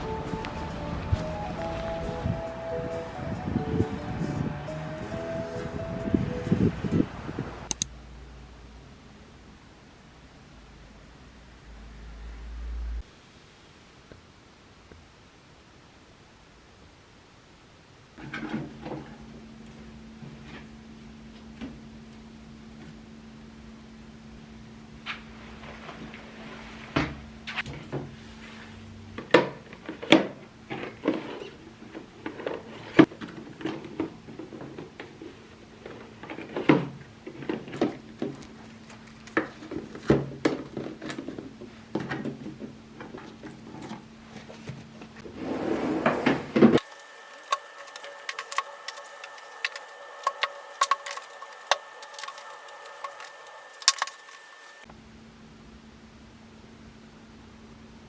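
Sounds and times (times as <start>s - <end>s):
light clicks: 7.7s - 7.9s
objects clattering on hard surface: 46.8s - 54.8s
steady low hum: 46.8s - 54.9s
steady whine: 46.8s - 54.9s.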